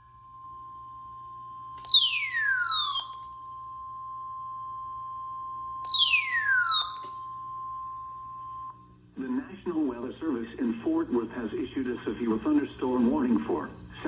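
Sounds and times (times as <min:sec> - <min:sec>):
steady high alarm tone: 0:00.0 - 0:08.9
falling chirps: 0:01.8 - 0:03.2, 0:05.8 - 0:07.2.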